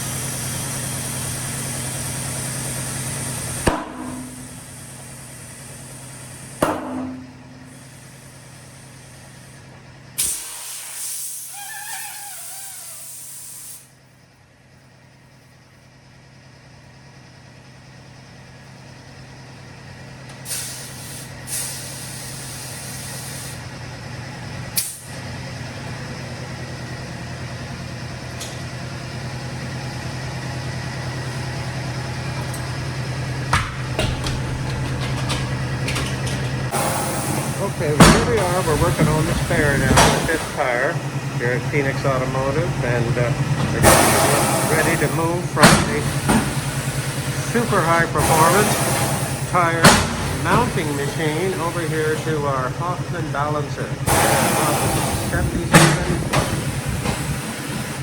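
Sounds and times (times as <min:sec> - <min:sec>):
steady low hum: 0:00.0 - 0:10.2, 0:13.9 - 0:58.0
compressed air hissing: 0:00.0 - 0:14.0, 0:20.4 - 0:23.7, 0:36.6 - 0:58.0
sharp metallic knocks: 0:03.7 - 0:04.6, 0:06.6 - 0:07.4.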